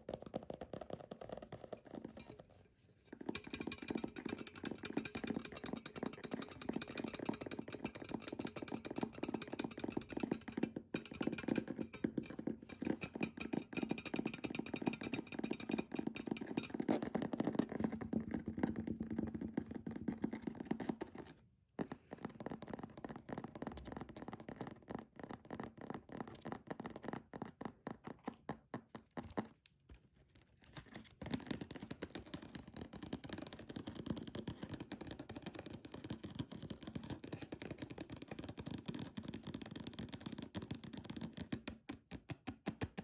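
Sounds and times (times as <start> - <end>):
fast fingernail tapping: 3.3 - 17.0.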